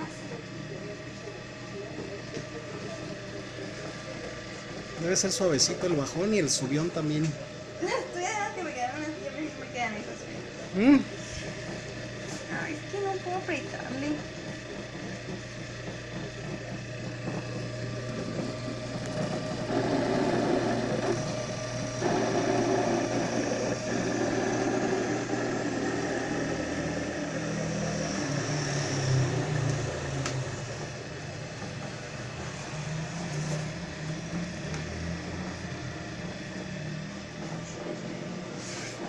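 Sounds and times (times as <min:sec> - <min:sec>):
drill motor humming: 0:00.0 - 0:39.0
drill bit boring into wood: 0:10.4 - 0:38.6.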